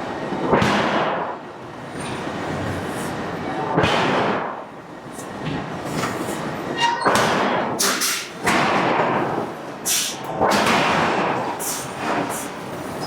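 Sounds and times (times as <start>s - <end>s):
noisy rushing sound: 7.2s - 13.0s.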